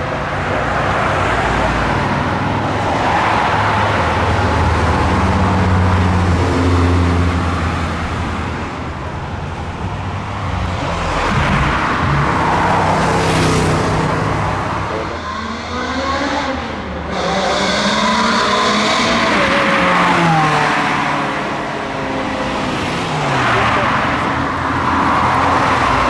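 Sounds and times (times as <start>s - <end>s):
car engines idling: 0.0s - 26.0s
car driving past: 9.6s - 21.3s.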